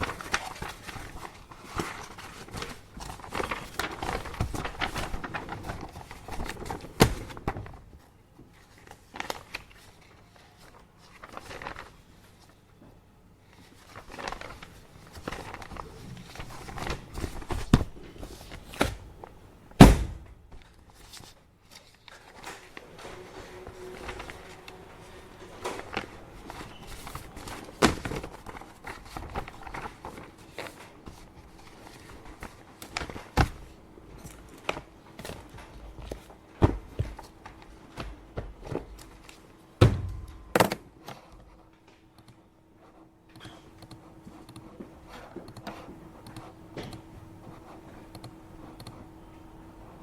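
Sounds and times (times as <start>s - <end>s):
objects and papers moved on desk: 21.0s - 33.6s.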